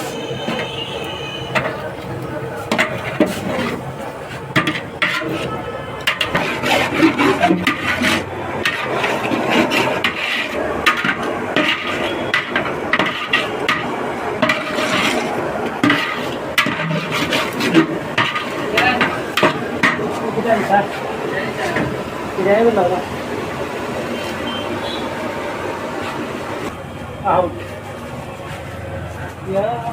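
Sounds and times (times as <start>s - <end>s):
spoon scraping in a cooking pan: 0.0s - 6.5s.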